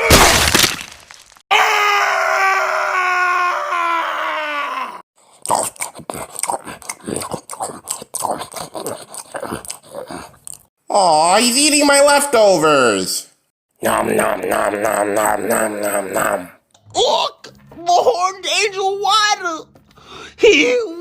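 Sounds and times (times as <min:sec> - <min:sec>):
chomping and crunching food: 0:05.2 - 0:10.7
long vocal groan: 0:13.8 - 0:16.6.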